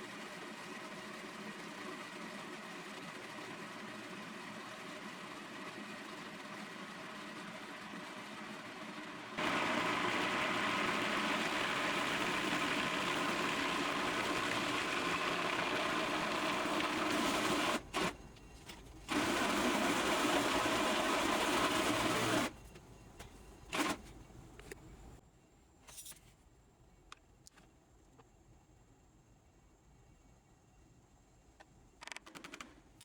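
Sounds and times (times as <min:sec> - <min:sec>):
electric blender motor whir: 0:08.9 - 0:18.2, 0:19.0 - 0:22.6.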